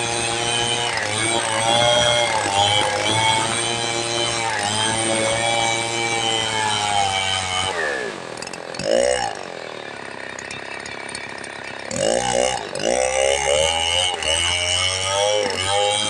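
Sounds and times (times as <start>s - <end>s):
chainsaw revving and idling: 0.0s - 16.0s.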